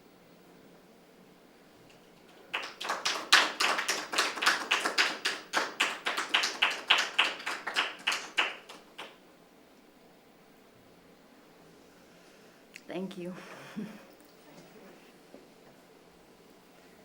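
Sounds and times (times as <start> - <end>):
hand clapping: 1.9 - 9.2.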